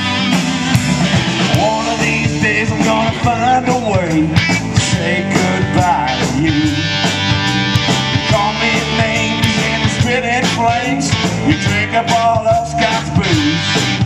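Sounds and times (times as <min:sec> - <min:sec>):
country-rock band playing: 0:00.0 - 0:14.0
steady drum beat: 0:00.0 - 0:14.0.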